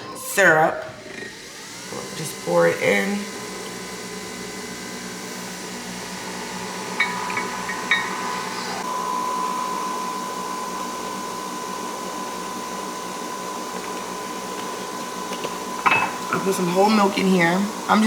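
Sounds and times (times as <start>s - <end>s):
coffee machine brewing: 0.0s - 18.0s
steady whine: 5.8s - 18.0s.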